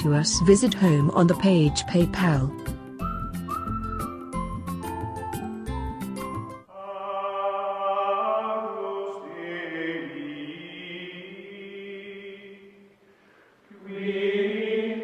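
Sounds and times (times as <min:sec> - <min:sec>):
choir holding sustained notes: 0:06.7 - 0:12.8, 0:13.7 - 0:15.0.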